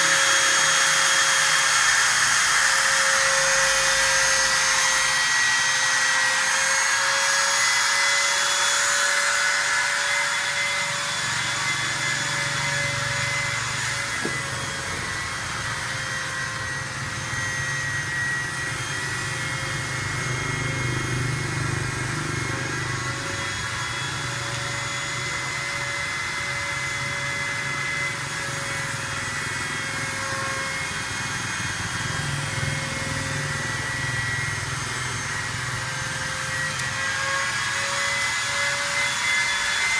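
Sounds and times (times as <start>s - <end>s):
cutting machine whine: 0.0s - 39.9s.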